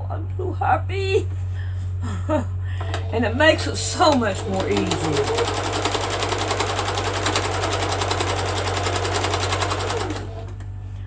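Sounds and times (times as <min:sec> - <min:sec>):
steady low hum: 0:00.0 - 0:09.0, 0:09.8 - 0:11.0
sewing machine stitching: 0:02.9 - 0:10.6.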